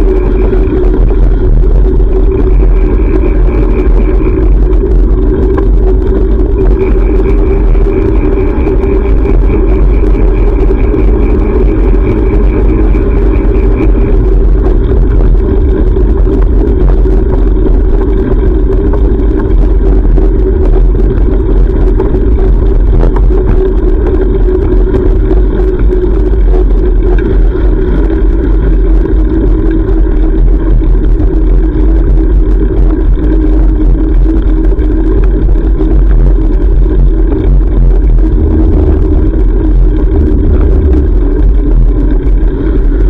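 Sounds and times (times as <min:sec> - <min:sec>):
rapid high ticks: 0:00.0 - 0:43.0
road traffic rumble: 0:37.3 - 0:43.0.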